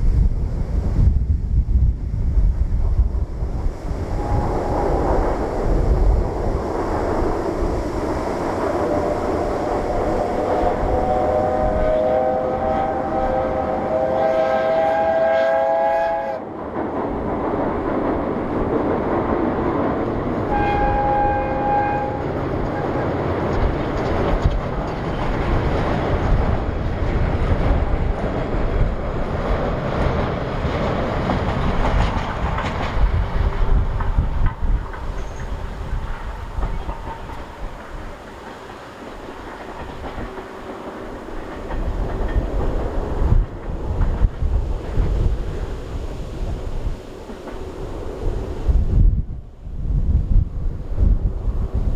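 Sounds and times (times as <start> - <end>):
steady rushing noise: 0.0 - 51.9
wind rumble on microphone: 0.0 - 51.9
train wheels clacking on rails: 2.9 - 48.4
steam locomotive whistle: 4.1 - 5.3, 8.8 - 16.5, 20.4 - 22.4.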